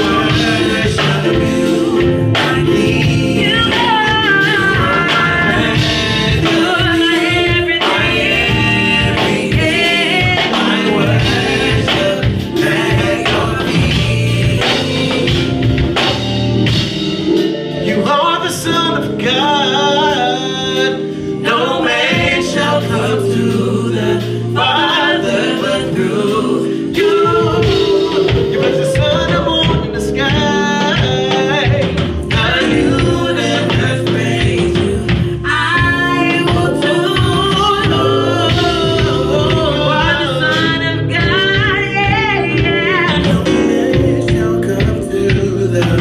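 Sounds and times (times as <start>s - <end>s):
choir singing gospel: 0.0s - 46.0s
instrumental chords with steady beat: 0.0s - 46.0s
live band music: 0.0s - 46.0s.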